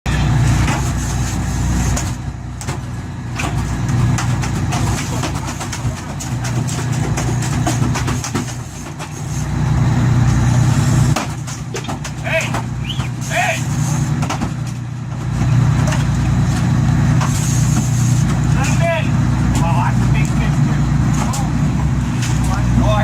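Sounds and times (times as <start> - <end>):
engine humming: 0.1 - 23.0
knocks and clatter: 1.9 - 9.3, 11.1 - 13.3, 14.1 - 22.7.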